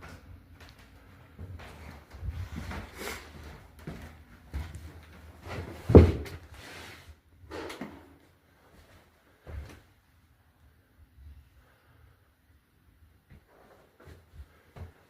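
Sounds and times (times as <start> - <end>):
handling knocks and thumps: 5.4 - 6.5.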